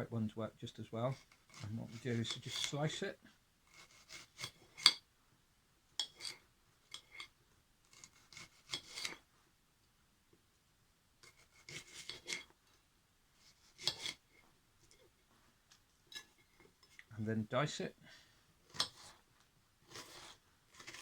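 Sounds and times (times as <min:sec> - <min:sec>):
knife slicing onion: 0:07.9 - 0:09.2, 0:11.2 - 0:12.5, 0:13.6 - 0:14.3, 0:18.7 - 0:19.2, 0:19.8 - 0:21.0.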